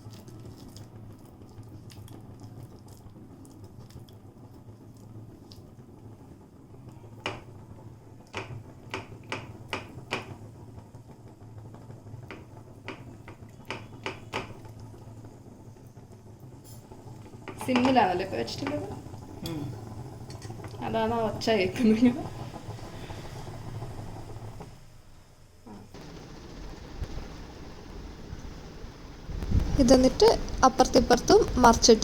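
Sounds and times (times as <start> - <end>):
oil popping in a frying pan: 0.0 - 21.6
steady low hum: 18.9 - 32.0.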